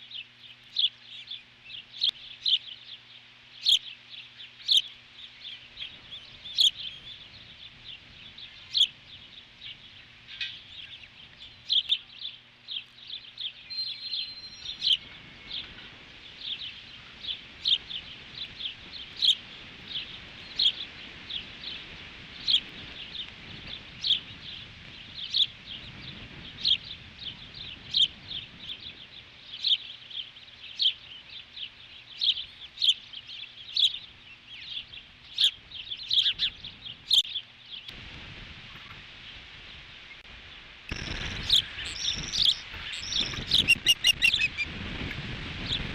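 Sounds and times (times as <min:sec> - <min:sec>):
bird chirping: 0:00.0 - 0:37.9, 0:40.9 - 0:44.7
wind rumble on microphone: 0:05.8 - 0:12.0, 0:14.4 - 0:29.8, 0:34.0 - 0:37.2, 0:37.8 - 0:45.9.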